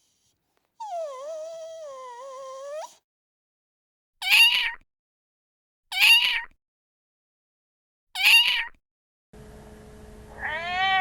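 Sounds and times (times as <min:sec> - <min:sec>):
cat meowing: 0:04.2 - 0:04.8, 0:08.2 - 0:08.7, 0:10.4 - 0:11.0.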